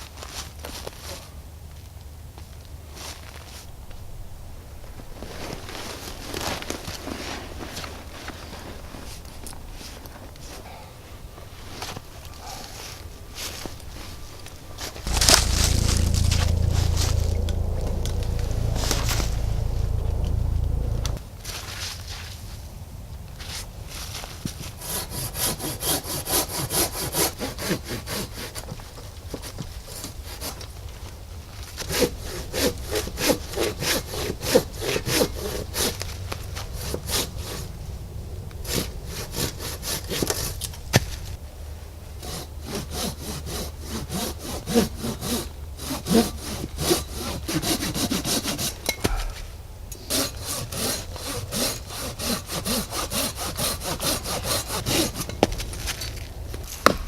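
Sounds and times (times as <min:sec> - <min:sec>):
hand saw cutting wood: 0:24.8 - 0:30.7, 0:31.8 - 0:37.6, 0:42.2 - 0:57.0.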